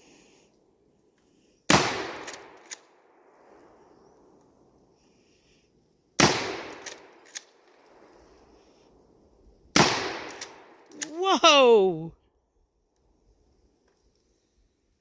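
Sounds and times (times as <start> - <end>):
shotgun blasts: 1.7 - 2.6, 6.2 - 6.8, 9.8 - 10.5.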